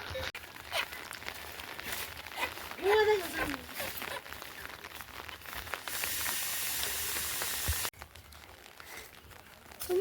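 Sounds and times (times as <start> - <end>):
steady hiss: 5.7 - 7.9.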